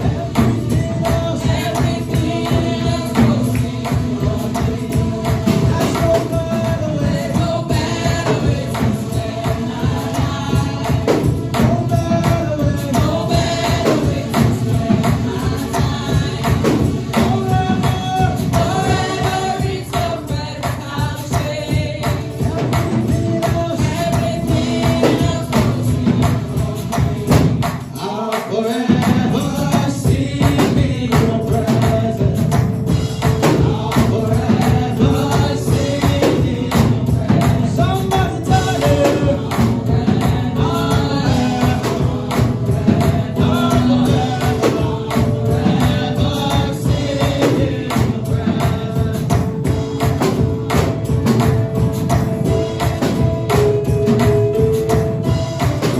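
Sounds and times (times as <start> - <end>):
gospel singers over a beat: 0.0 - 55.9.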